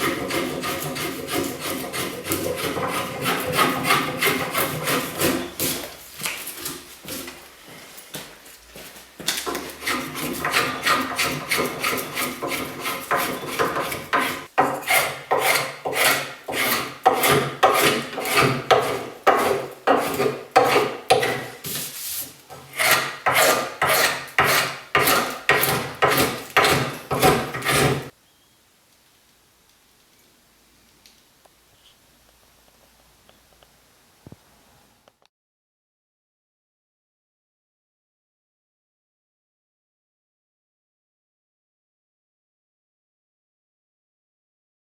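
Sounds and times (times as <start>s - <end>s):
spokeshave scraping wood: 0.0s - 7.4s, 9.4s - 28.1s.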